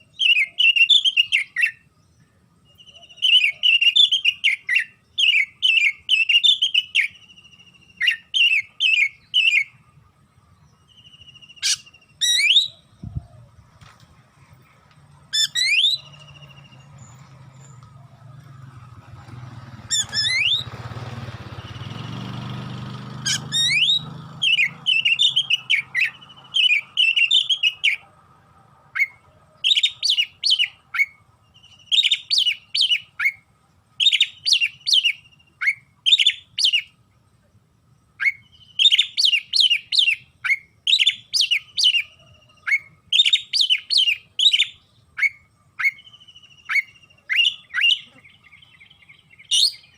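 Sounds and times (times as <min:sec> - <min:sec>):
bird singing: 0:00.0 - 0:49.9
low rumble: 0:16.0 - 0:22.6.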